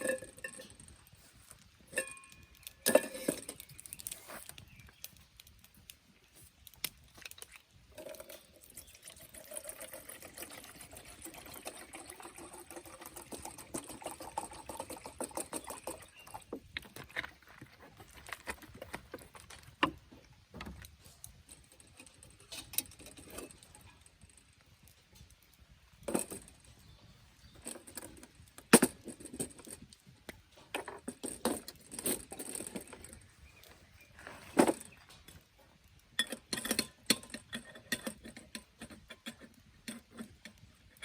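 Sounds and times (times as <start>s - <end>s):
clinks and knocks: 0.0s - 5.5s, 6.8s - 25.4s, 26.0s - 41.0s
liquid pouring into a container: 7.9s - 16.5s.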